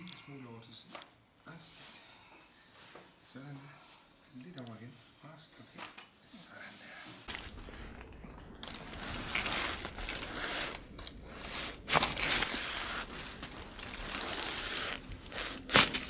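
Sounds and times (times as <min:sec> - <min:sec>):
rustling on treatment table: 0:06.9 - 0:16.0.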